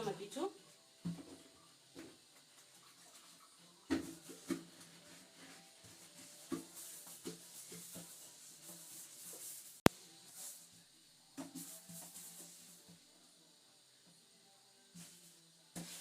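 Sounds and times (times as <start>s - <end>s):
cloth scrubbing a surface: 4.3s - 10.6s.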